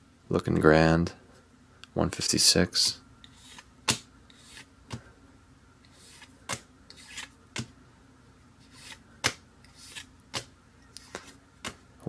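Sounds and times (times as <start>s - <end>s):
cards sliding swishes: 3.2s - 5.1s, 5.8s - 7.7s, 8.6s - 11.8s.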